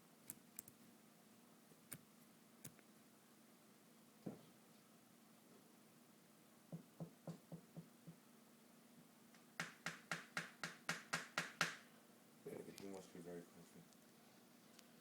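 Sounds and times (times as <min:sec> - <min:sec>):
person making clicking sounds: 0:00.3 - 0:00.8, 0:09.6 - 0:11.8.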